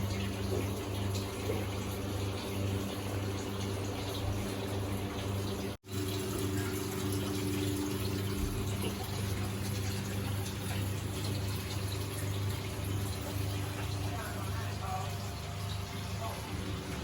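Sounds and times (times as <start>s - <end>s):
low motor hum: 0.0s - 17.0s.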